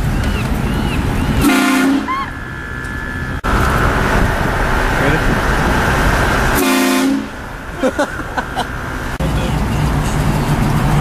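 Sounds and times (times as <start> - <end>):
steady high-pitched tone: 1.2 - 9.2
air horn blast: 1.4 - 3.0, 6.5 - 7.4.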